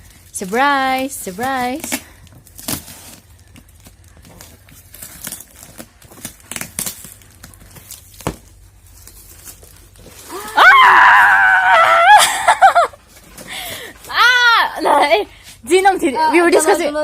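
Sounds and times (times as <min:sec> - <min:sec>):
gift packaging rustling: 0:00.0 - 0:11.4, 0:12.2 - 0:16.0
woman squealing: 0:10.3 - 0:13.0, 0:14.1 - 0:15.2.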